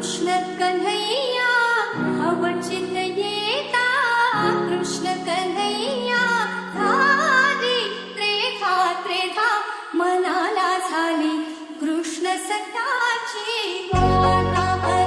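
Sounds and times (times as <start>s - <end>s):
woman singing: 0.0s - 15.0s
held instrumental chords: 13.9s - 15.0s.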